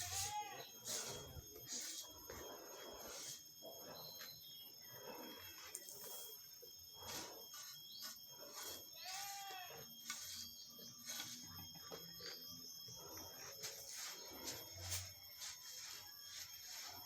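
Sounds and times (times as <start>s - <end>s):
sand being sifted: 0.0s - 3.4s, 7.0s - 11.6s, 13.4s - 17.0s.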